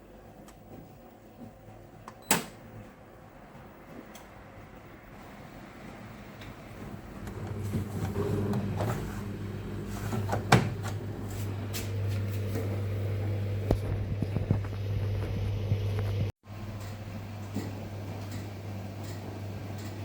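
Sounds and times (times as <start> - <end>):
washing machine motor hum: 0.0 - 20.0.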